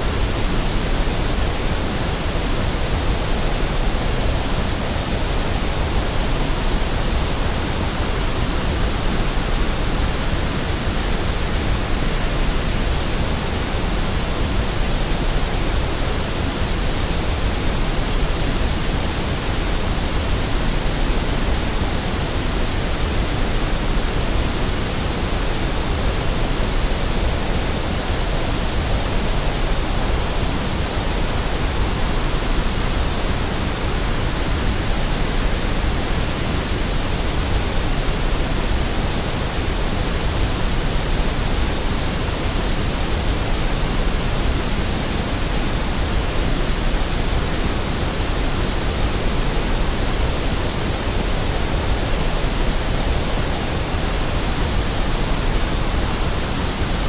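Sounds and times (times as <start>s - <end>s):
white noise hiss: 0.0s - 57.0s.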